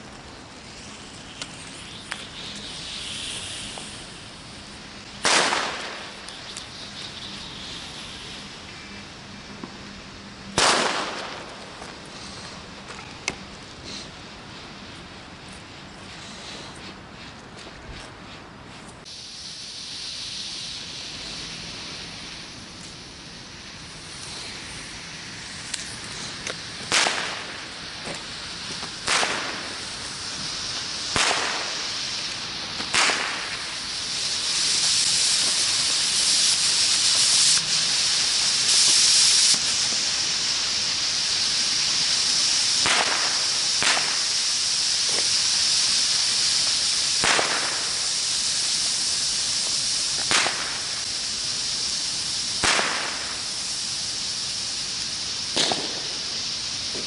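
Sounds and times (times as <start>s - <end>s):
burning firework hissing: 0.0s - 57.0s
firecracker bangs: 5.2s - 6.6s, 10.5s - 12.0s, 26.2s - 53.9s, 55.3s - 57.0s.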